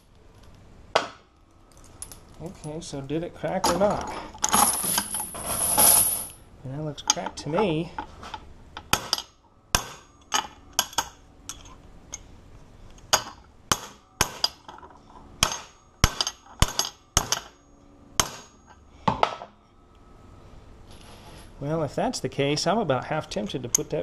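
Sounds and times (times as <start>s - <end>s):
hammer striking metal padlock: 15.4s - 17.6s, 18.2s - 18.6s.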